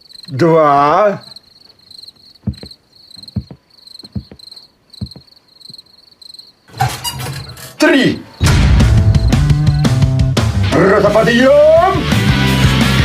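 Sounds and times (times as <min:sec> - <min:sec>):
cricket chirping: 0:00.0 - 0:10.1
soft knocks: 0:02.4 - 0:05.8.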